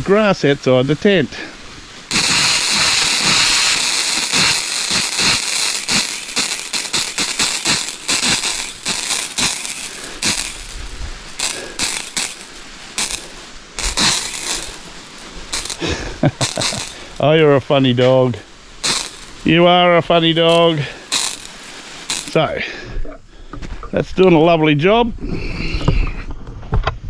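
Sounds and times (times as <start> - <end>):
hose spraying water on grass: 0.0 - 22.8
sharp clicks: 2.1 - 17.2, 18.8 - 19.5, 21.1 - 22.4.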